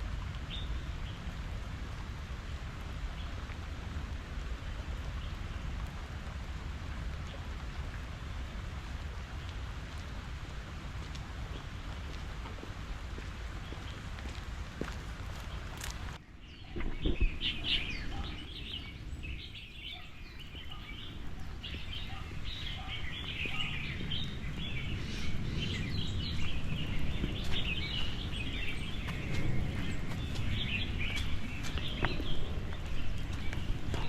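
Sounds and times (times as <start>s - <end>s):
small birds chirping: 15.4s - 34.0s.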